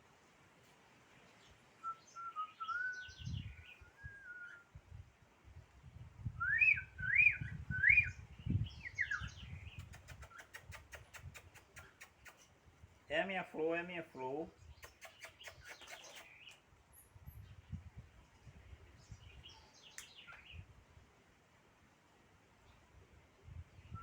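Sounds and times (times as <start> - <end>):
songbird singing: 1.1 - 4.9, 6.3 - 20.8, 23.5 - 24.0.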